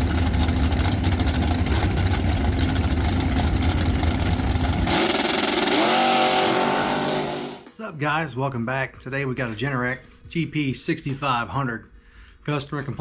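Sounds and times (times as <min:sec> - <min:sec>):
engine running: 0:00.0 - 0:07.7
pitched tone: 0:04.9 - 0:07.7.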